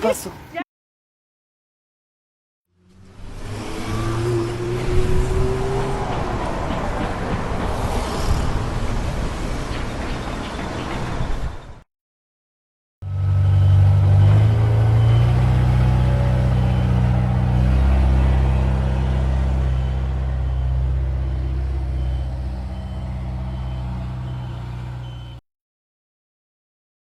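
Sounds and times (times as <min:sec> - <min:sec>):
heavy machine engine running: 0:13.0 - 0:25.4
faint reversing alarm beeping: 0:13.1 - 0:17.2, 0:18.4 - 0:25.4.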